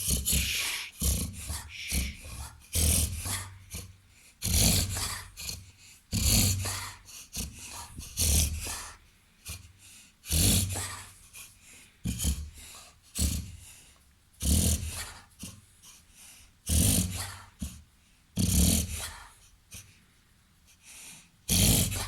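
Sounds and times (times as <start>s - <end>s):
dog breathing: 0.0s - 17.8s
dog reverse sneezing: 0.2s - 2.4s.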